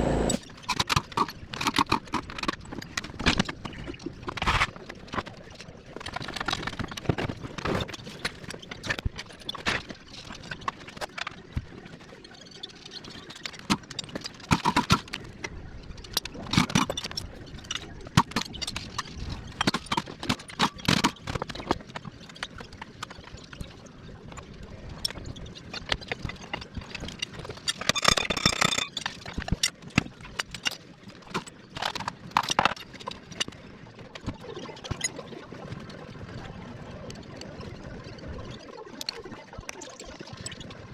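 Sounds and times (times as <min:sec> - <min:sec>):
tools and metal parts clanking: 0:25.8 - 0:33.6.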